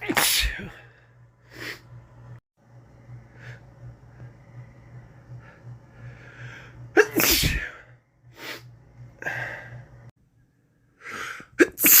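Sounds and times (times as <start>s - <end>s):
man sneezing: 0.0s - 0.8s, 7.0s - 7.8s, 11.6s - 12.0s
breathy in-breaths: 11.0s - 11.6s.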